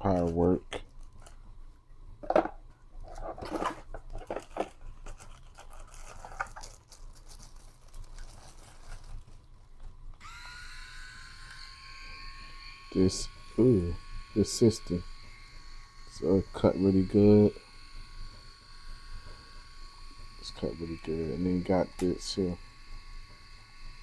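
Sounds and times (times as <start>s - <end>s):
handling rustling and clicks: 2.4s - 10.0s
electric shaver humming: 10.2s - 24.0s.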